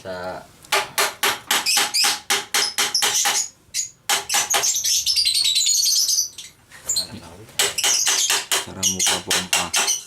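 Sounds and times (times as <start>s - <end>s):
hammer striking metal: 7.6s - 10.0s.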